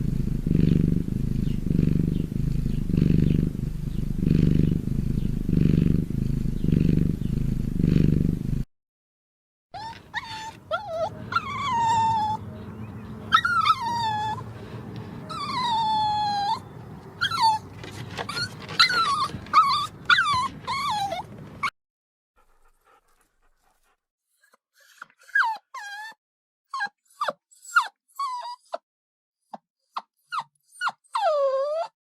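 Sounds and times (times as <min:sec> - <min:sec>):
dog whining and whimpering: 0:09.8 - 0:21.7, 0:24.4 - 0:28.8, 0:29.9 - 0:32.0.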